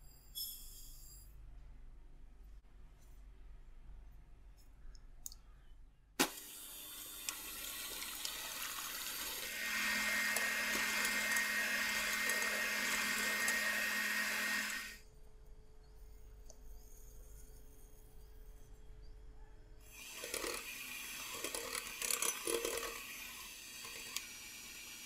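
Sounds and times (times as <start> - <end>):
electric mixer running: 6.2 - 15.0, 19.9 - 25.0.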